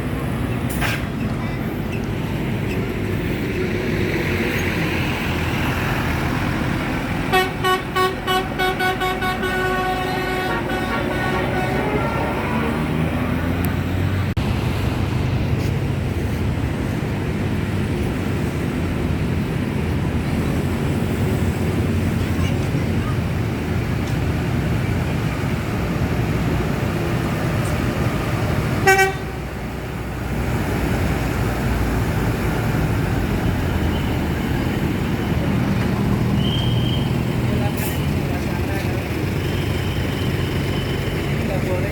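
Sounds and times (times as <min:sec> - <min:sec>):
roadside traffic noise: 0:00.0 - 0:41.9
vehicle horn toot: 0:07.3 - 0:12.4, 0:28.8 - 0:29.4.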